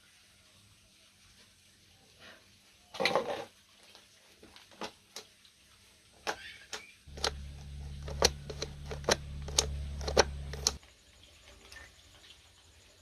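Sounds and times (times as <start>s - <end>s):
low steady hum: 7.1s - 10.8s
small parts clicking: 7.1s - 10.8s.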